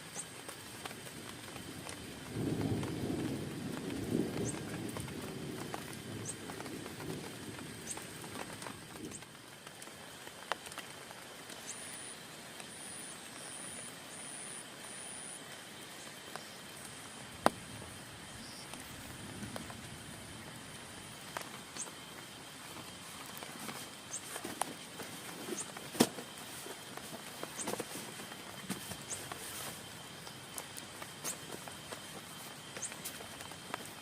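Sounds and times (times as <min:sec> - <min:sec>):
rain on a tent: 0:00.0 - 0:34.0
low rumble of thunder: 0:01.3 - 0:09.2, 0:16.9 - 0:22.1.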